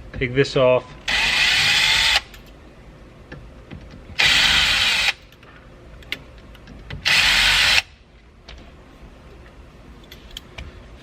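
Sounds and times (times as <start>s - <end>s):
power drill whirring: 1.1s - 2.4s, 4.2s - 5.3s, 7.0s - 7.9s.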